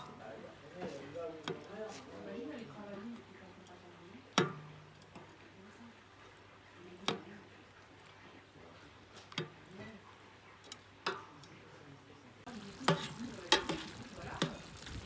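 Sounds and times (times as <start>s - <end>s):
food sizzling in a pan: 12.5s - 15.0s
wood fire crackling: 12.5s - 15.0s.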